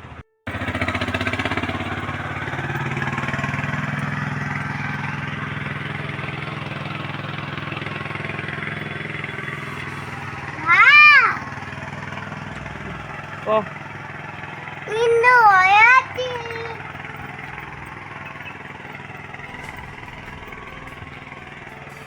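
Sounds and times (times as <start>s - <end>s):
small engine running: 0.0s - 22.0s.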